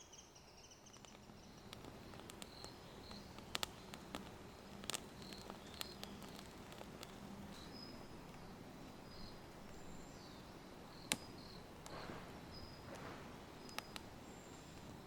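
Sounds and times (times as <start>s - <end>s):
faint steady hiss: 0.0s - 15.0s
sharp clicks: 0.9s - 8.5s, 11.0s - 12.1s, 12.8s - 15.0s.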